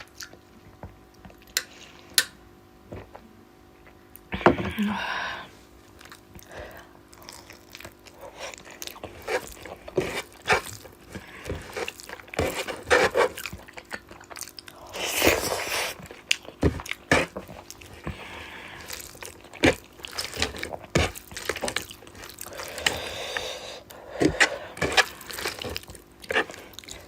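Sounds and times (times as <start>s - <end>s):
wet chewing and lip-smacking: 0.0s - 2.0s, 6.0s - 6.5s, 7.1s - 18.1s, 18.8s - 23.1s, 24.4s - 27.0s.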